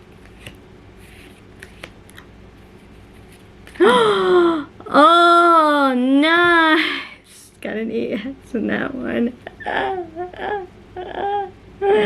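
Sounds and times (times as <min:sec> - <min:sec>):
trading cards rustling and clicking: 0:00.2 - 0:03.7.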